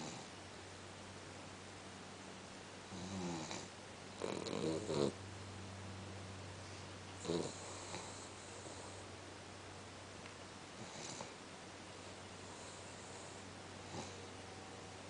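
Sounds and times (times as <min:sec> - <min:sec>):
dog snoring: 0:00.0 - 0:00.3, 0:02.9 - 0:05.2, 0:07.2 - 0:09.0, 0:10.8 - 0:11.4, 0:12.4 - 0:14.3
low steady hum: 0:00.0 - 0:15.0.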